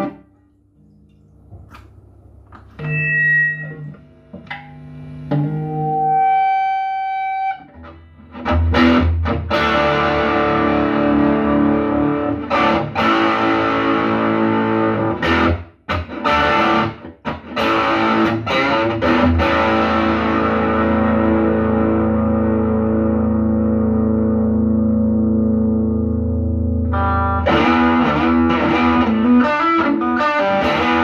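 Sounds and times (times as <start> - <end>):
distorted electric guitar chords: 0.0 - 0.4, 1.4 - 31.0.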